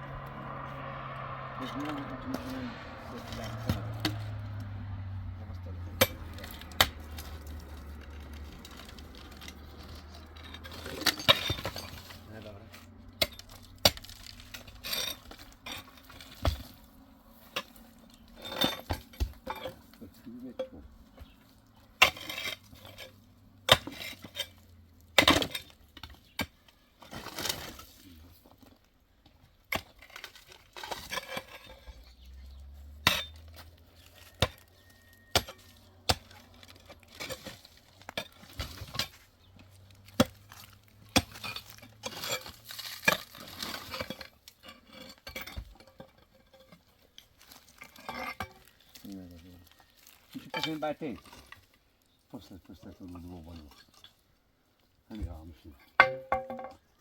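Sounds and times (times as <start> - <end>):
hard objects clinking: 29.7 - 51.8.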